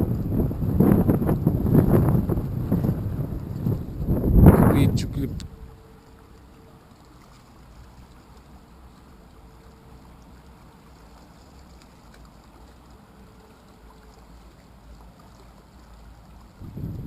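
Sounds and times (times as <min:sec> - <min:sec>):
low rumble: 0:16.6 - 0:17.0.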